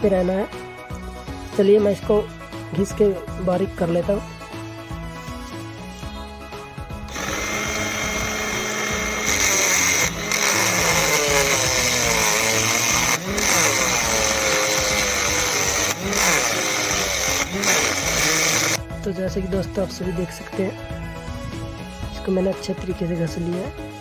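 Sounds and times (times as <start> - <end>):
motor whining: 7.0 - 18.8
metal file scraping: 7.1 - 18.8.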